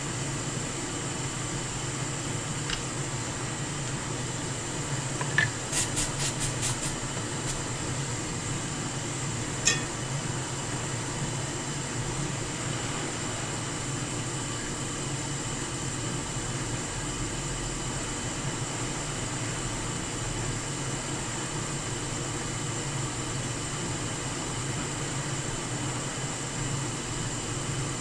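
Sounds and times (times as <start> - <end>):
fan hiss: 0.0 - 28.0
faint high whine: 9.5 - 10.8.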